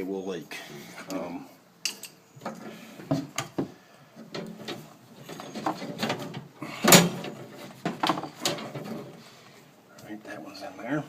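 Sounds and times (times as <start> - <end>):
pipe handling clunks: 2.4 - 9.2.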